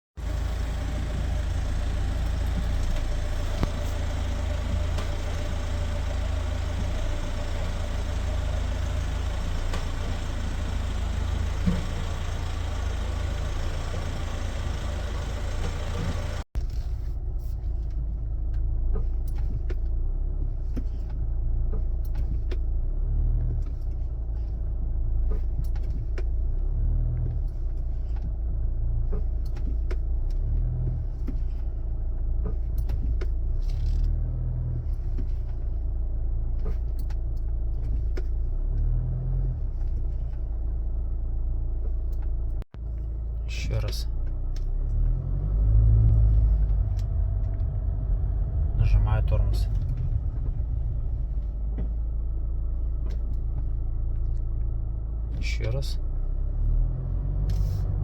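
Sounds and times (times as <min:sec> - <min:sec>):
road and engine rumble: 0:00.0 - 0:58.0.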